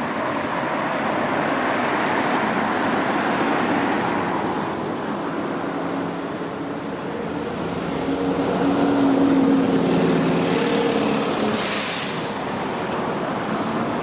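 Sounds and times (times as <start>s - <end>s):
sudden hiss: 11.5s - 12.4s.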